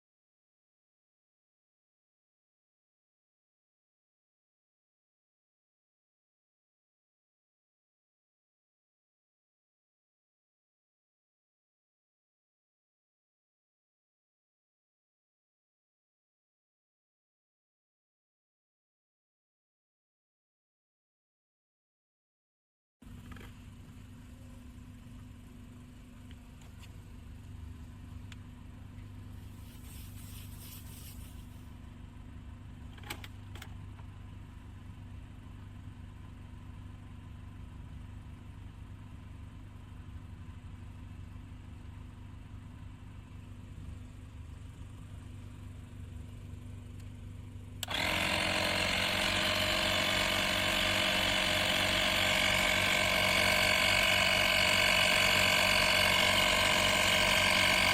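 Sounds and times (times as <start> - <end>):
car engine idling: 23.0 - 57.9
tyre inflator buzzing whine: 47.8 - 57.9.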